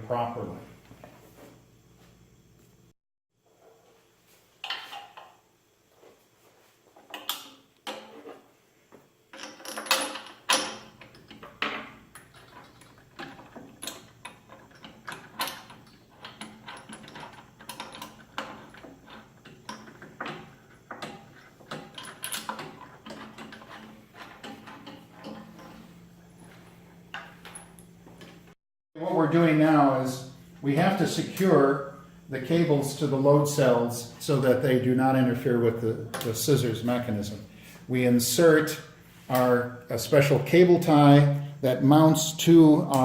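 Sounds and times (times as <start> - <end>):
faint steady hum: 0.0 - 43.0
metal hardware clinking and knocking: 9.3 - 25.8.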